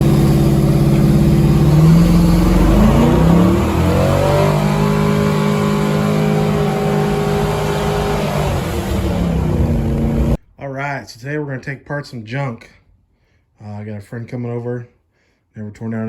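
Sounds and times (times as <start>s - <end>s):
car engine revving: 0.0s - 10.4s.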